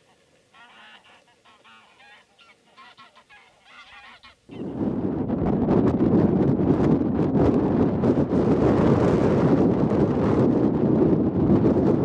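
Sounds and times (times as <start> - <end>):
geese honking: 0.0 - 4.7
wind buffeting microphone: 4.4 - 12.0.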